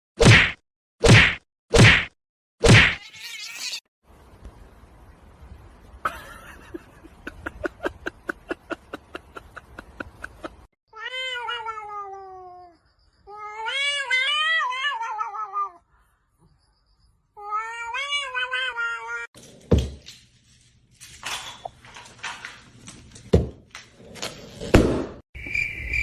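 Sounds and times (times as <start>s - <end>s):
cat yowling: 2.9s - 3.8s, 11.0s - 15.8s.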